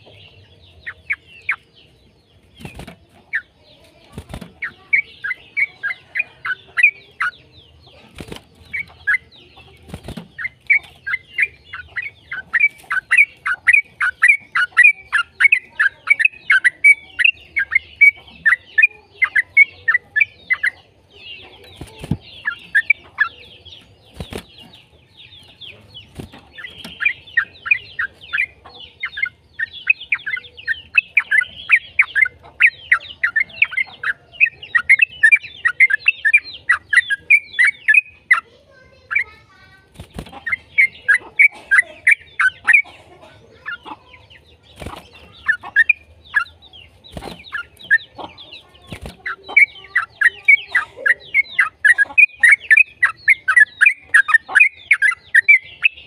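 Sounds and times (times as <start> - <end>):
bird chattering song: 0.0 - 56.0.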